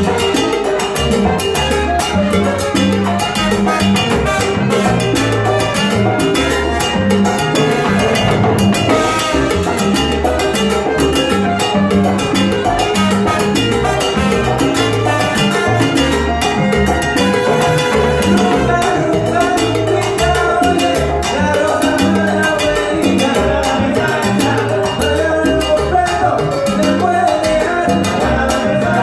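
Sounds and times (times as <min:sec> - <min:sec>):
salsa band playing: 0:00.0 - 0:29.0.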